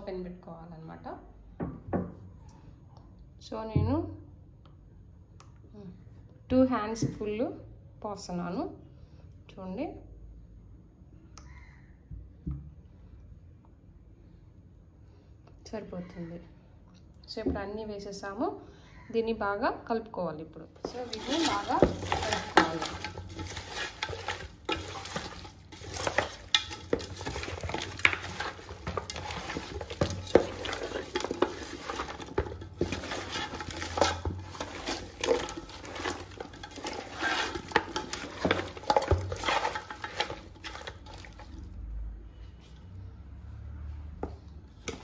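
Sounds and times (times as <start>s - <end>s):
wet stirring: 20.7s - 41.8s, 44.8s - 45.0s
clinks and knocks against pot: 20.9s - 41.3s.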